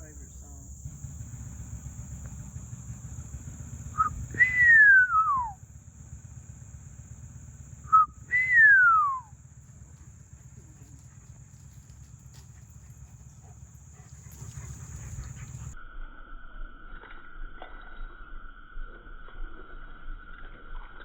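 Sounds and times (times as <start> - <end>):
cricket trill: 0.0 - 21.0
person whistling downward slide: 4.0 - 5.6, 7.9 - 9.3.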